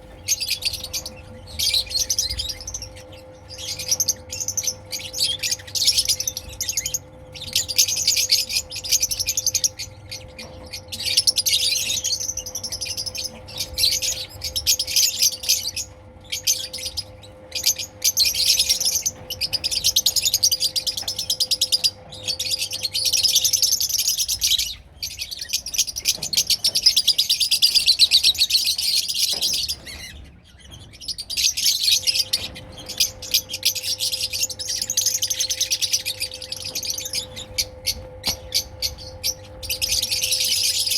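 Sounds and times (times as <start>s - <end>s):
faint steady hum: 0.0s - 40.9s.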